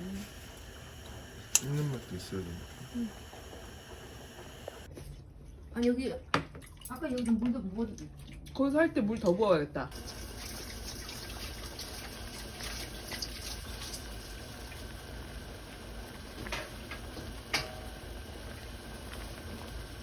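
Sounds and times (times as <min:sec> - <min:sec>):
water dripping and pouring: 0:09.9 - 0:15.4.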